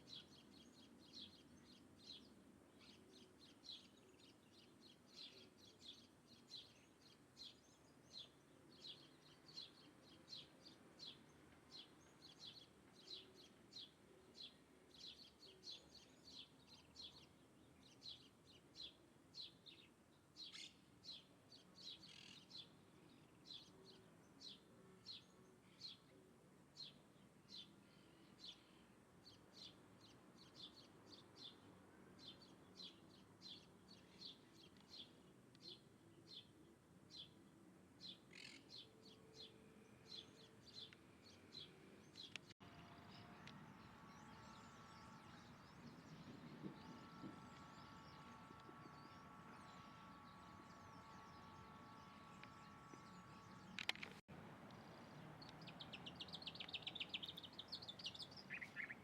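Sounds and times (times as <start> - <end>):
small bird chirping: 38.0 - 54.3, 54.9 - 59.0.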